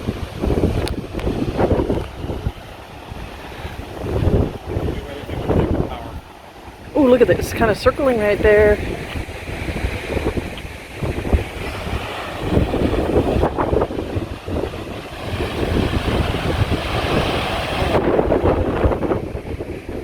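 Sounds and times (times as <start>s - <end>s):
gusty wind buffeting microphone: 0.0s - 20.0s.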